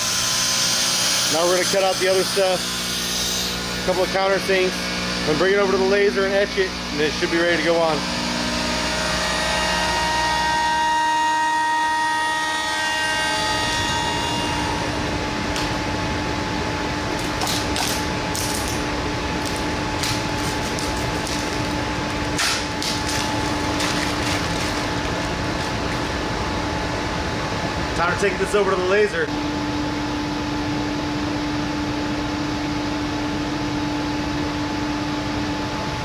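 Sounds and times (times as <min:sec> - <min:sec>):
power tool cutting acrylic: 0:00.0 - 0:04.7, 0:07.2 - 0:26.5.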